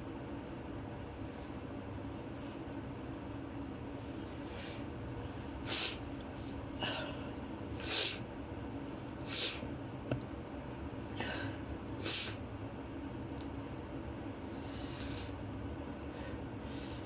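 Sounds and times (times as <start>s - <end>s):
person sneezing: 7.8s - 8.2s.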